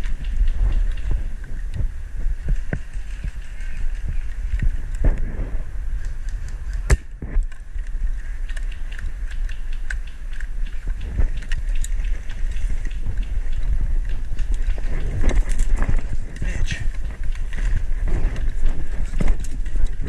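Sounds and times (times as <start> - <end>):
wind rumbling on microphone: 0.0 - 20.0
sharp clicks and knocks: 6.0 - 20.0.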